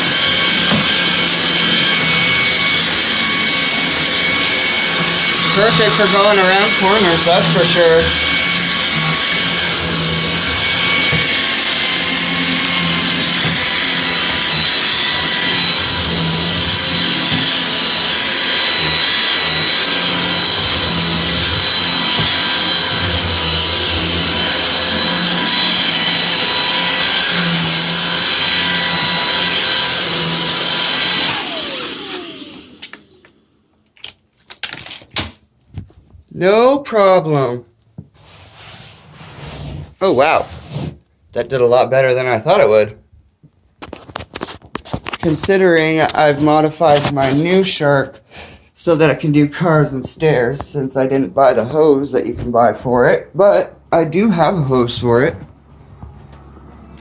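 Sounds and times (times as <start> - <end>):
vacuum motor whine: 0.0 - 33.6.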